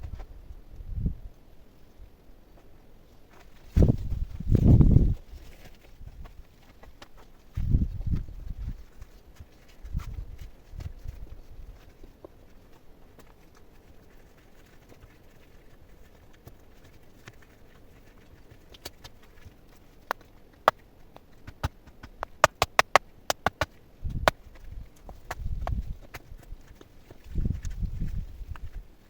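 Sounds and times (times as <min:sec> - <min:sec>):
hard material knocking: 0:21.5 - 0:24.5.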